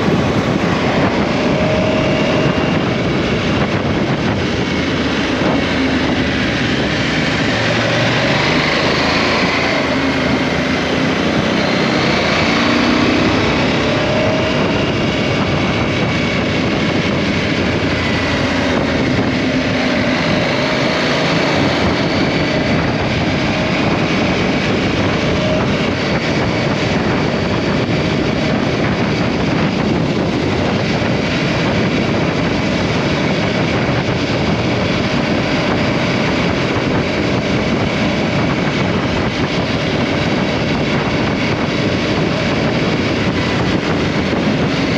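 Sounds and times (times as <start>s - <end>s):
motorcycle engine running: 0.0s - 44.9s
wind noise on microphone: 0.0s - 44.9s.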